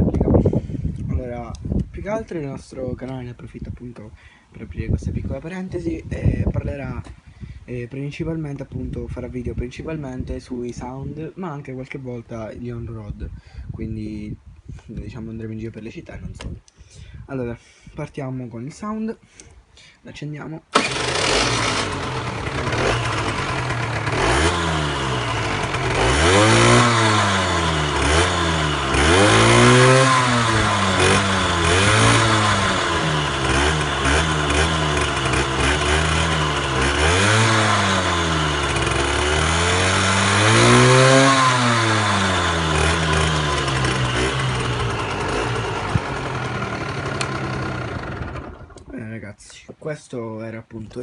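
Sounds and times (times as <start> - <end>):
motorcycle engine revving: 20.8 - 48.9.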